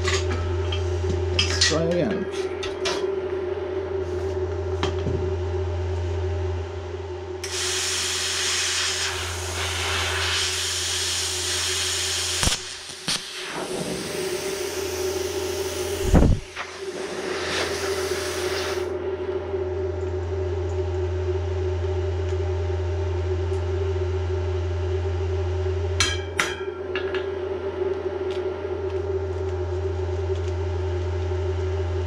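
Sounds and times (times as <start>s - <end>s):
low machine hum: 0.0s - 32.0s
welding arc hissing and crackling: 7.4s - 18.9s.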